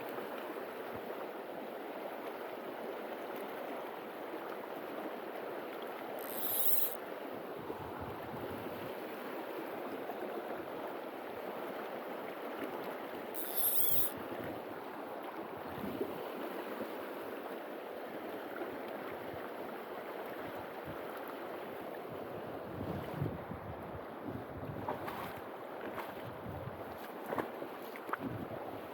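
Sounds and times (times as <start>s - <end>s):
brief high-pitched sounds: 13.4s - 14.1s.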